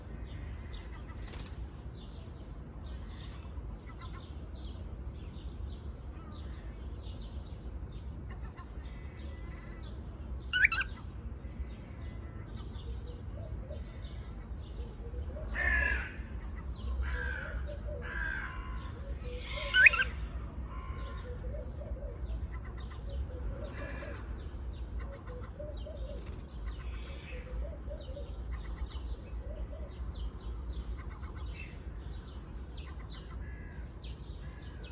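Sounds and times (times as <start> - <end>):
parrot chirps: 10.5 - 10.9, 19.7 - 20.1
parrot squawks: 10.5 - 10.9, 19.6 - 20.1.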